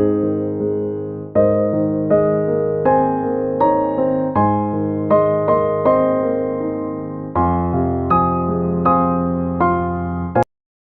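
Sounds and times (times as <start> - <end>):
soft electric piano chords: 0.0 - 10.5.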